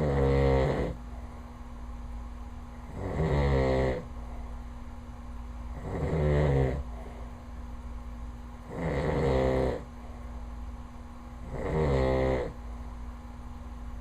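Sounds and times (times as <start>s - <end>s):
man snoring: 0.0s - 1.0s, 2.9s - 4.1s, 5.8s - 6.9s, 8.7s - 9.9s, 11.4s - 12.6s
steady low hum: 0.0s - 14.0s.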